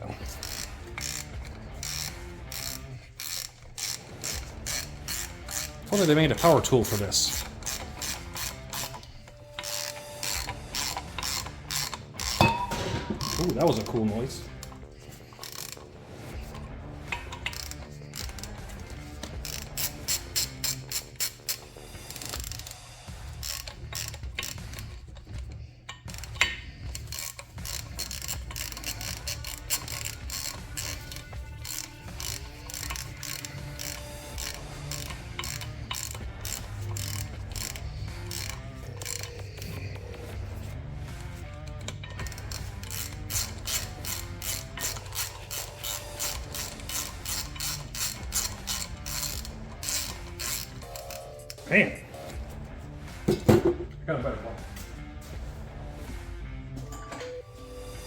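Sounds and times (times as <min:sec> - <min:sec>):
ratchet wrench clicking: 0:00.0 - 0:51.7.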